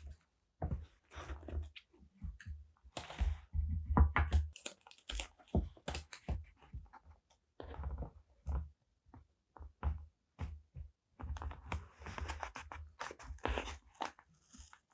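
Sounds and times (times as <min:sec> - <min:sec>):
crinkling paper: 0:04.4 - 0:06.2.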